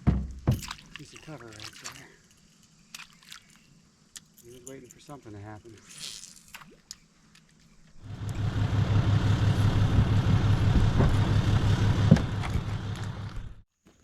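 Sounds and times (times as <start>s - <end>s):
vehicle engine idling: 8.0s - 13.6s.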